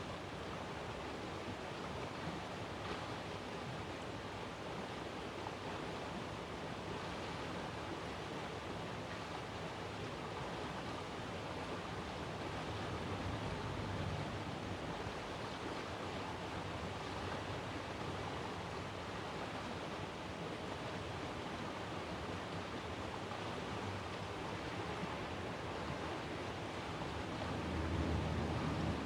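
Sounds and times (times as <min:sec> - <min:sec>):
rushing outdoor background noise: 0:24.7 - 0:29.0.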